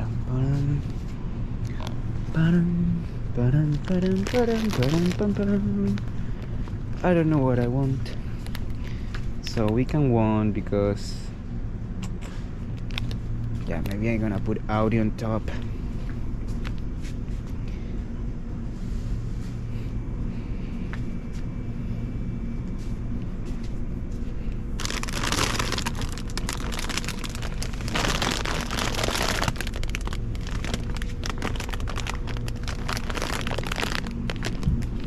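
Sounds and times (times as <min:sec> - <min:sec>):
car engine and road noise: 0:00.0 - 0:35.0
plastic bags rustling: 0:03.4 - 0:06.7, 0:12.8 - 0:13.2, 0:24.7 - 0:35.0.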